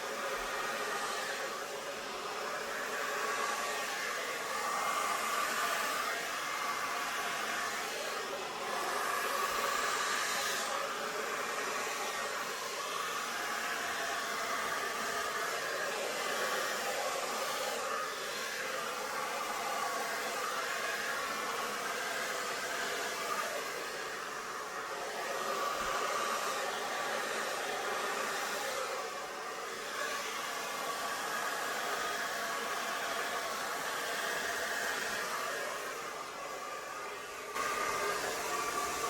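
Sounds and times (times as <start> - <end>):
hair dryer running: 0.0 - 39.0.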